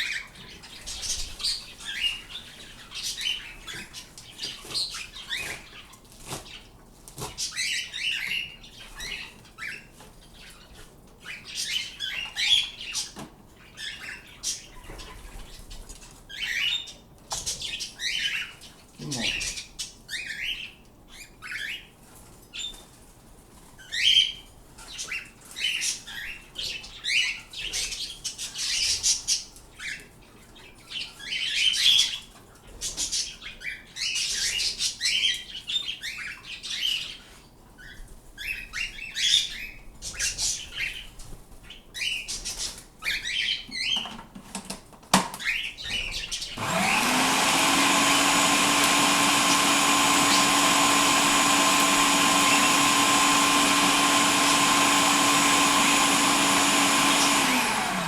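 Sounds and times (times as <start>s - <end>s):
electric food chopper motor: 46.6s - 58.0s.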